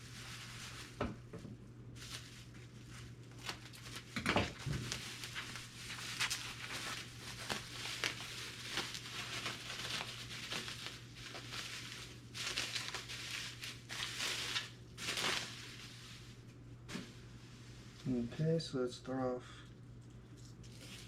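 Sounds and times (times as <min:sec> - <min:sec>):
packaging crinkling and tearing: 0:00.0 - 0:01.1, 0:02.0 - 0:16.5, 0:20.0 - 0:21.0.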